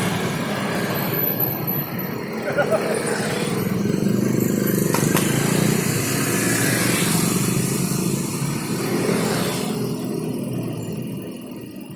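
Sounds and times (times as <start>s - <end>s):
vehicle engine running: 0.0s - 11.2s.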